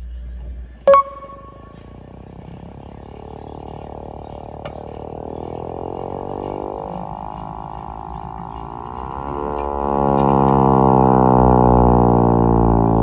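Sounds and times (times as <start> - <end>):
hand-crank siren winding up: 0.9 - 13.0.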